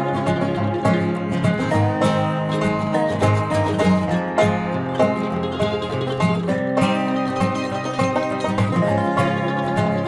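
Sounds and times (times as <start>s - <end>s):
banjo and guitar music: 0.0s - 10.0s.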